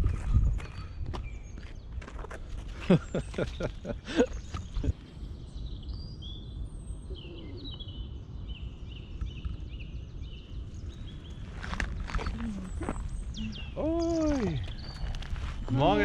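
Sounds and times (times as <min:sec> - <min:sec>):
birds chirping and singing: 0:00.0 - 0:16.0
low outdoor rumble: 0:04.6 - 0:16.0.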